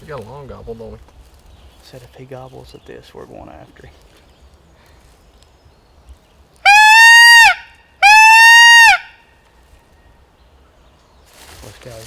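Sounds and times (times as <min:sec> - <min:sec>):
shrill peacock call wails: 0:06.6 - 0:09.4.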